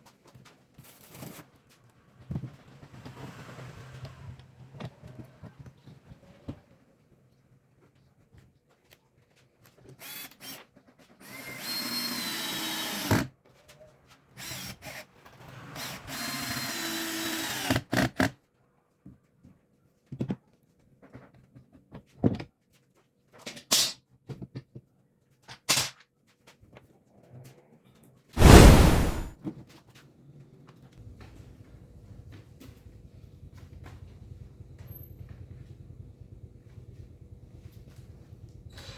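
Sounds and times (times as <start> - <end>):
power drill boring into wood: 10.0 - 10.6, 11.2 - 13.3, 14.4 - 15.0, 15.8 - 18.1.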